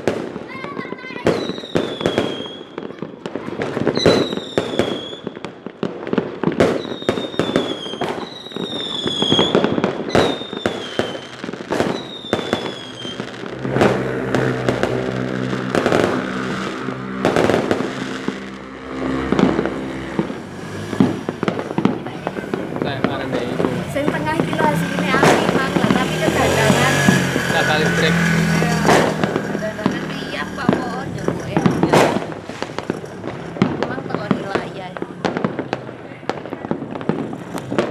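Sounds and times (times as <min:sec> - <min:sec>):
firework cracks: 0:00.0 - 0:37.9
shrill firework whistle: 0:01.3 - 0:02.8, 0:04.0 - 0:05.4, 0:06.8 - 0:11.3, 0:11.9 - 0:13.3.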